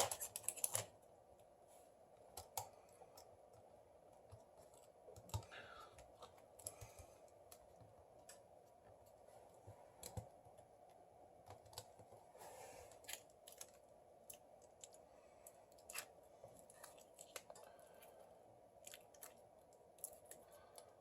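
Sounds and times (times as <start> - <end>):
steady background hum: 0.0 - 21.0
faint clicks and taps of small parts: 2.2 - 12.3.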